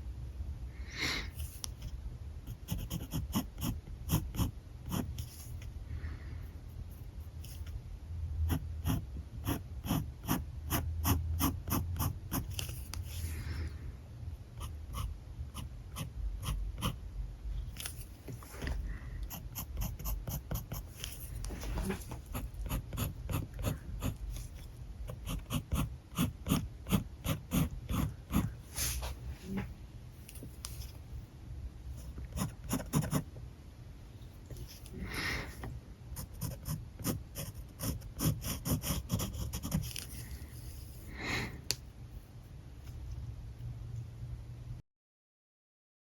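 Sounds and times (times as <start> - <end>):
low steady rumble: 0.0 - 41.1, 41.7 - 44.8
marker scratching on paper: 2.5 - 5.5, 8.5 - 13.3, 19.3 - 24.5, 25.1 - 29.0, 32.3 - 33.2, 36.2 - 40.0.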